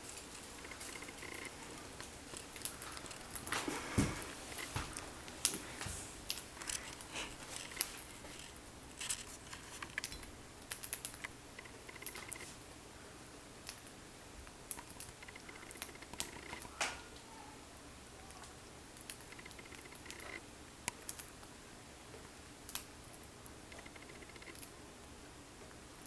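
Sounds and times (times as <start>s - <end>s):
bird beak crunching food: 0.3s - 4.8s, 6.3s - 12.5s, 14.7s - 16.7s, 19.0s - 21.4s, 22.7s - 24.7s.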